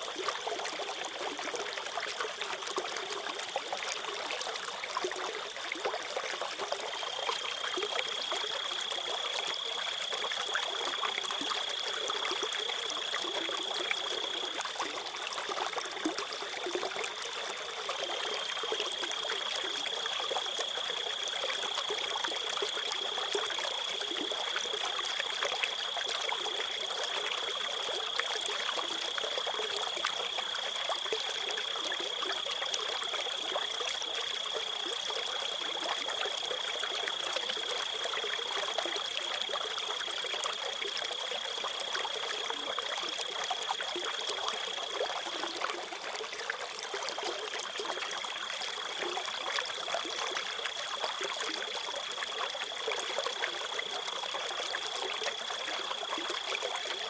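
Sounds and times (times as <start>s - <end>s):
trickling stream: 0.0s - 57.0s
crickets trilling: 7.0s - 14.6s, 18.0s - 24.8s.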